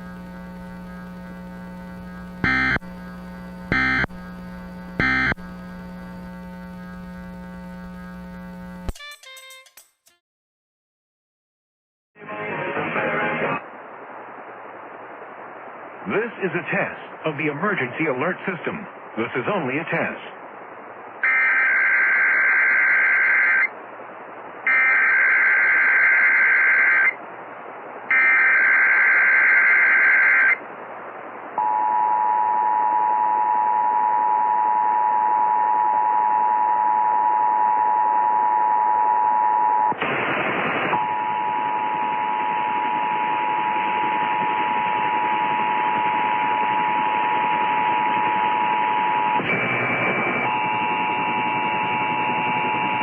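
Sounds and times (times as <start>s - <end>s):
radio static hiss: 0.0s - 9.0s, 12.2s - 31.6s, 39.6s - 53.0s
two-tone alert signal: 2.4s - 2.8s, 3.7s - 4.1s, 5.0s - 5.4s.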